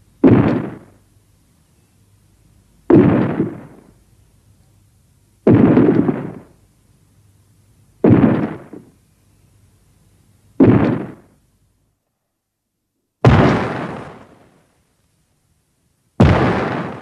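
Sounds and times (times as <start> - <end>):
heavy booming impacts: 13.2 - 14.4, 16.2 - 17.0.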